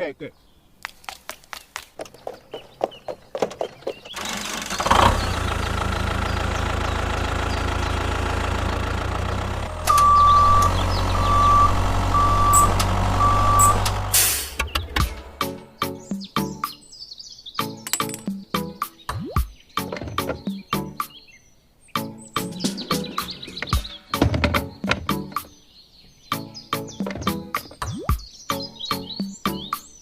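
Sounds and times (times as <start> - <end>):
truck engine running: 4.1 - 15.4
reversing alarm beeping: 9.8 - 14.5.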